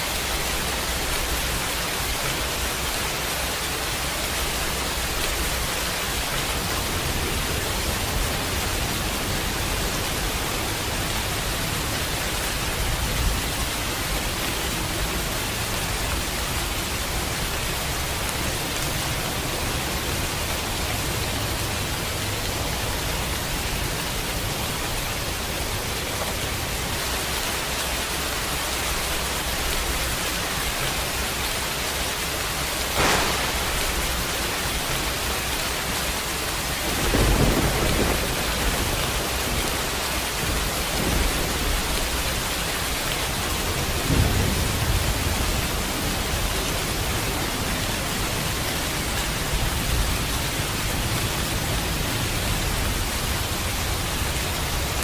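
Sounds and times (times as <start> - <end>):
steady rain: 0.0 - 55.0
thunder rumbling: 32.8 - 47.2
sharp crack of thunder: 32.9 - 35.2, 36.8 - 39.9, 43.8 - 46.0.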